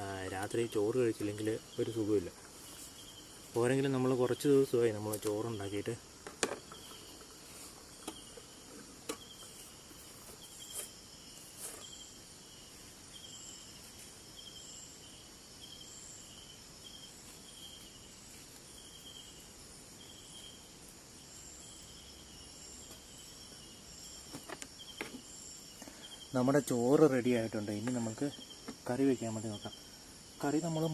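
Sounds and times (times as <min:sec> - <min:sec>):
crickets chirping: 0:00.0 - 0:30.9.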